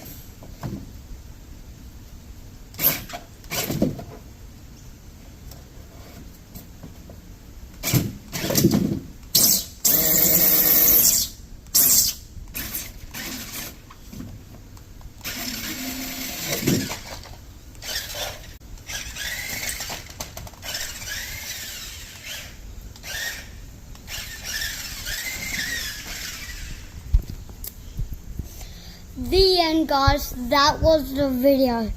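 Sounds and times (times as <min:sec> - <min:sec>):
toy car electric motor whining: 0:09.3 - 0:13.9, 0:15.2 - 0:27.0
squeaking and scraping: 0:15.2 - 0:27.0.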